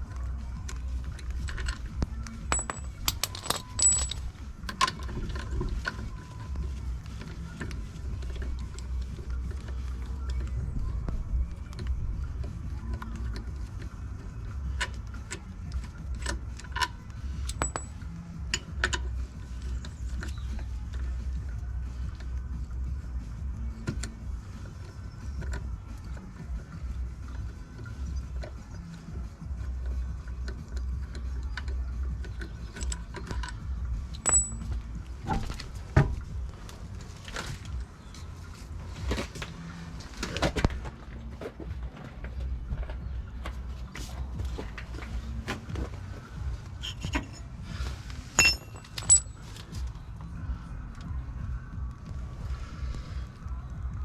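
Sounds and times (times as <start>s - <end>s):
low steady hum: 0.0s - 54.0s
metallic clinks and knocks: 1.4s - 5.9s, 16.6s - 19.1s, 32.3s - 35.7s, 46.8s - 47.5s, 48.3s - 49.8s
steady low rumble: 32.1s - 54.0s.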